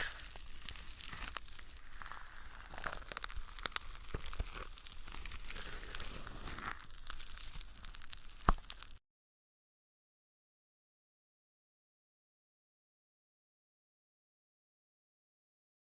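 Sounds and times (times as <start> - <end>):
plastic wrapping crinkling and tearing: 0.0 - 9.0.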